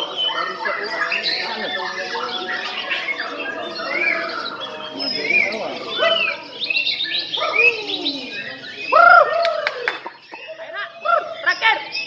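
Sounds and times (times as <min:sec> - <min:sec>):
songbirds singing: 0:00.0 - 0:12.0.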